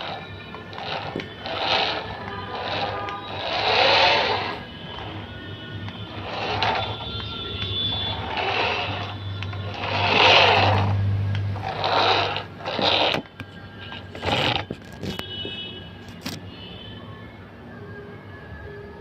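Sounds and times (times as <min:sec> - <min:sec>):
small electric motor whirring: 0:00.0 - 0:05.1, 0:06.1 - 0:15.2
sharp clicks and knocks: 0:00.6 - 0:03.2.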